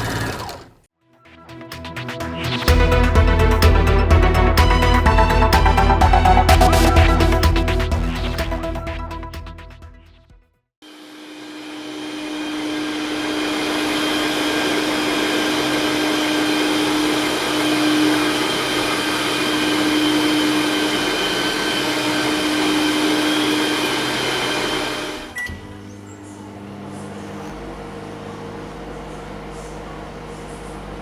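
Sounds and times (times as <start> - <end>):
appliance motor humming: 0.0 - 0.9, 10.9 - 31.0.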